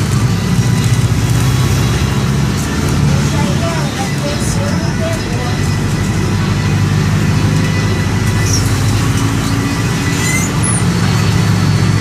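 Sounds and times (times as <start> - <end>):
bus diesel engine running: 0.0 - 12.0
high squeaks from bus body: 7.6 - 11.6.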